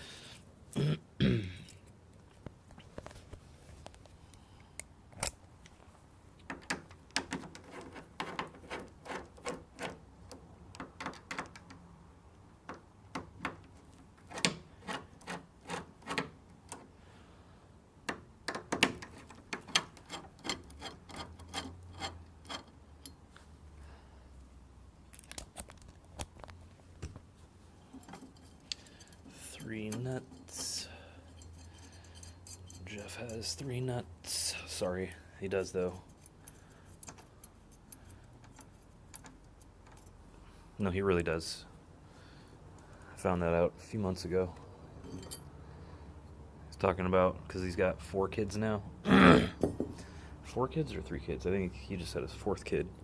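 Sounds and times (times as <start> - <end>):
small metal and plastic parts clicking: 36.1 - 40.2.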